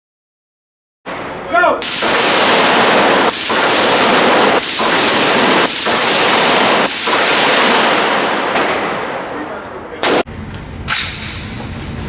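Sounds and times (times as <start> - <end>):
automatic gunfire bursts: 1.8 - 9.2.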